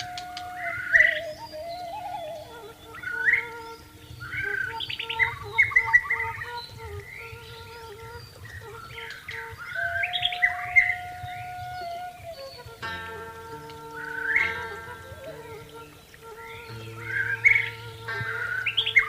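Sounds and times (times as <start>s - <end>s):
bird singing whistled phrases: 0.0s - 7.8s, 8.8s - 13.0s
faint long flute notes: 0.0s - 19.0s.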